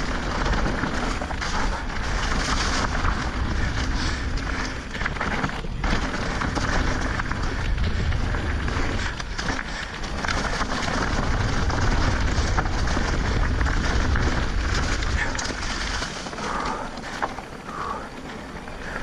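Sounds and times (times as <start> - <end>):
bike knocks and rattles: 0.0 - 19.0
wind rumbling on microphone: 0.0 - 19.0.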